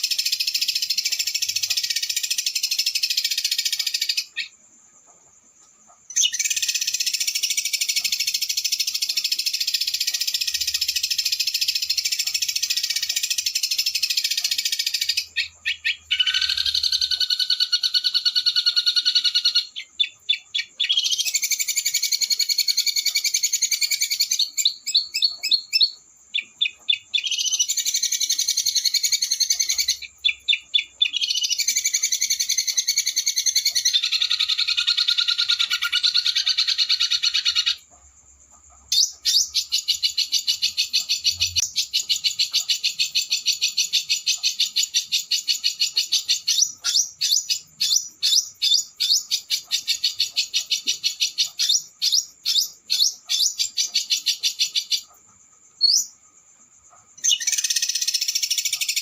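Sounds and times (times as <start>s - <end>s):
songbird trilling: 5.9s - 38.0s, 38.9s - 55.2s, 55.8s - 56.2s, 57.1s - 59.0s.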